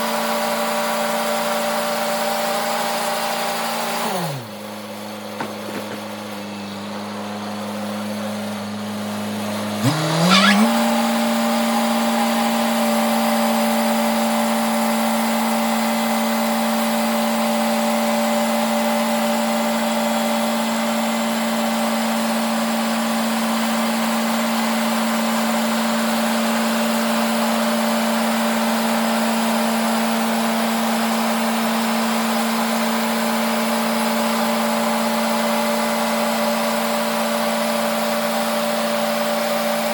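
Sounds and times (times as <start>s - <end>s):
sawmill machinery humming: 0.0s - 16.5s.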